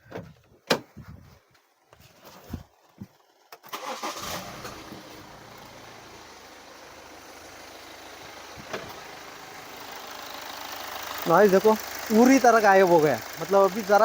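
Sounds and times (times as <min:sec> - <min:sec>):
car engine starting and idling: 0:03.2 - 0:14.0.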